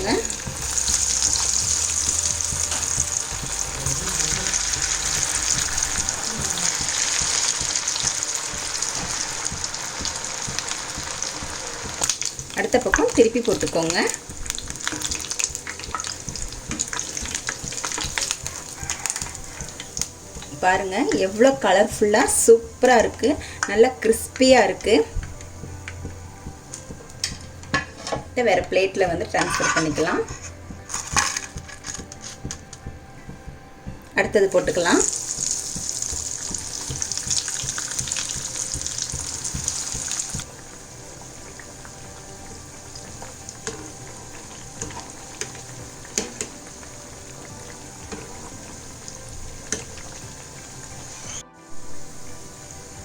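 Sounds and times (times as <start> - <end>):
food deep-frying in oil: 0.0 - 32.9, 34.1 - 53.0.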